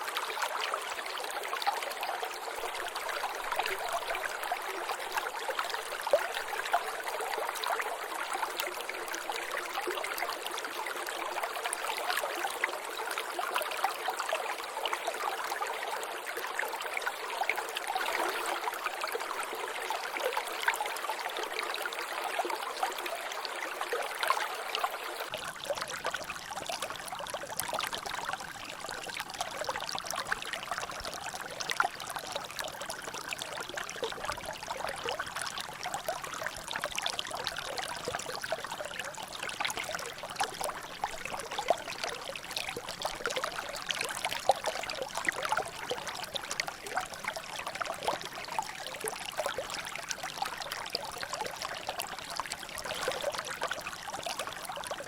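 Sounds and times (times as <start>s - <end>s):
water trickling and dripping: 0.0s - 55.0s.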